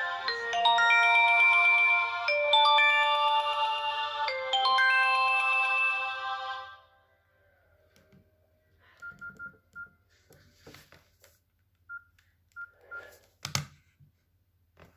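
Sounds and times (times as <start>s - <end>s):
phone keypad beeps: 9.0s - 10.0s.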